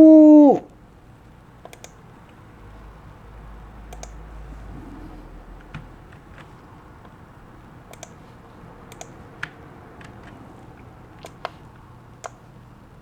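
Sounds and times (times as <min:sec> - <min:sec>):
faint steady hum: 0:00.0 - 0:13.0
light sharp clicks: 0:01.6 - 0:02.4, 0:03.9 - 0:04.2, 0:07.9 - 0:08.2, 0:08.9 - 0:12.4.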